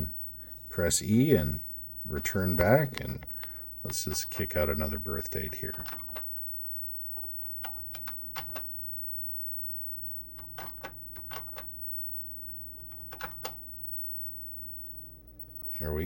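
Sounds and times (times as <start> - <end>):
low steady hum: 0.0 - 16.0
computer keyboard keys clacking: 7.2 - 8.7, 10.4 - 11.7, 12.8 - 13.6.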